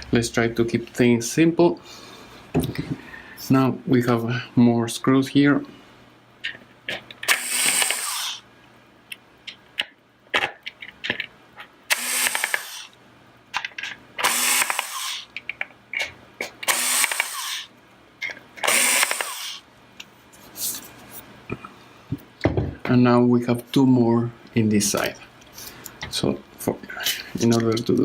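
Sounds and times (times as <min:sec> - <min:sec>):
power screwdriver whirring: 0:07.3 - 0:08.4, 0:11.9 - 0:12.9, 0:14.2 - 0:15.3, 0:16.7 - 0:17.7, 0:18.6 - 0:19.6.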